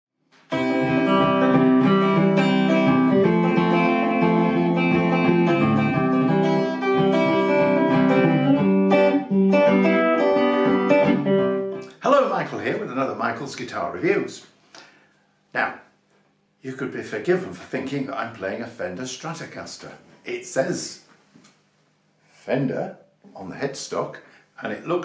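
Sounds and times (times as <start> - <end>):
clean electric guitar chords and notes: 0.4 - 12.0.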